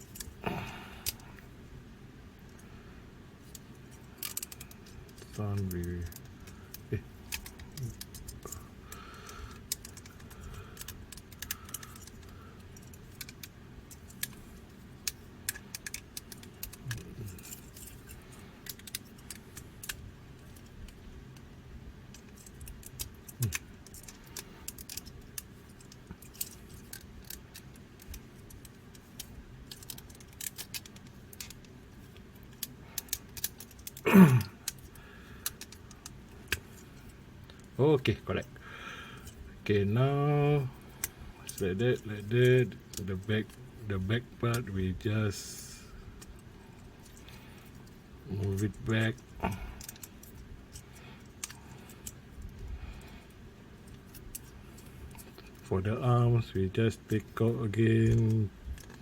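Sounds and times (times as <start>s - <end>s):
toy robot parts clicking: 3.5s - 8.6s, 9.2s - 21.0s, 22.1s - 36.8s, 46.2s - 52.6s, 58.0s - 59.0s.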